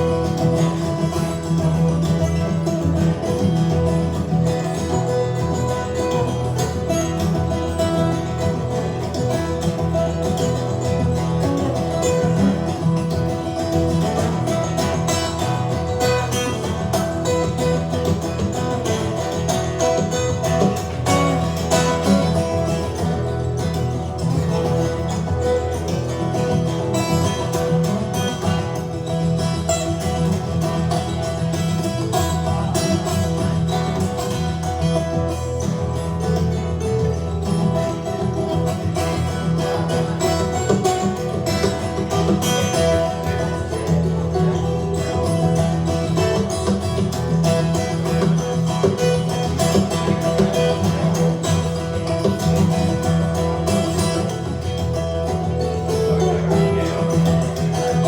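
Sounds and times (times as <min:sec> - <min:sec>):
guitar plucked strings: 0:00.0 - 0:58.0.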